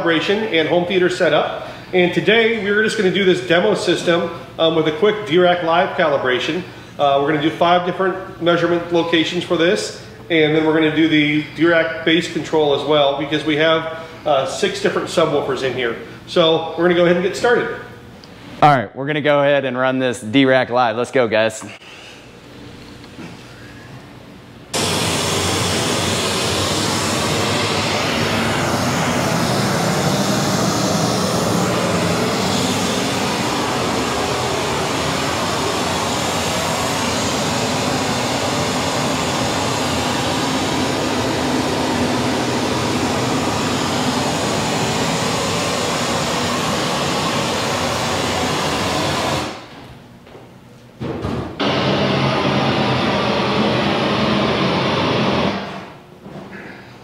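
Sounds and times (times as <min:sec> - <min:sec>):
loud rushing noise: 0:24.7 - 0:49.7, 0:51.6 - 0:56.0.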